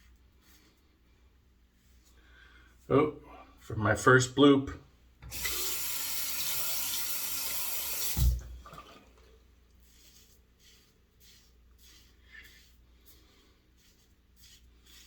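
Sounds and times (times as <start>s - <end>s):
water tap running into sink: 5.2s - 9.0s
tap shutting off thump: 8.2s - 8.5s.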